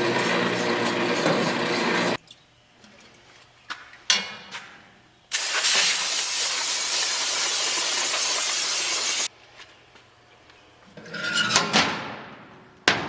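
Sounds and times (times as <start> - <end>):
aerosol spray hissing: 5.3 - 9.3.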